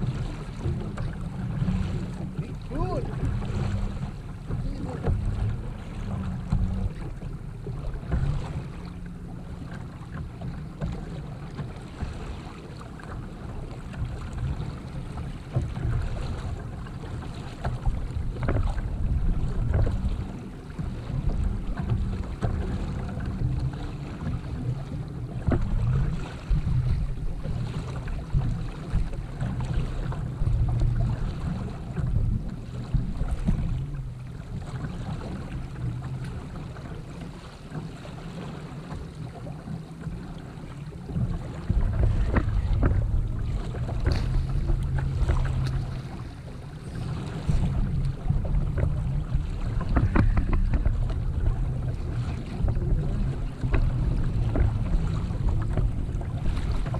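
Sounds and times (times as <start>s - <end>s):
water lapping against hull: 0.0s - 56.9s
wind buffeting microphone: 41.0s - 56.9s.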